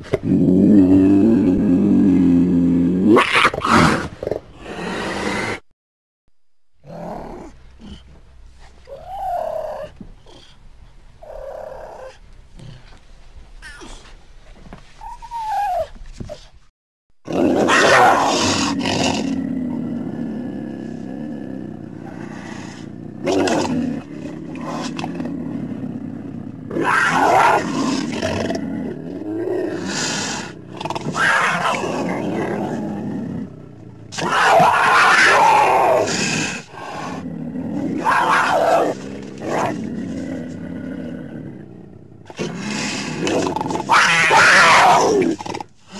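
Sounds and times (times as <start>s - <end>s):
dinosaur roars and shrieks: 17.3s - 25.7s, 26.6s - 41.3s, 42.3s - 45.4s.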